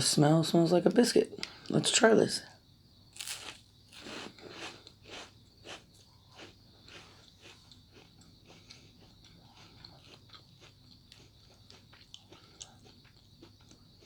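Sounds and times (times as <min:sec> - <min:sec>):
crunchy biting and chewing: 0:03.2 - 0:14.0.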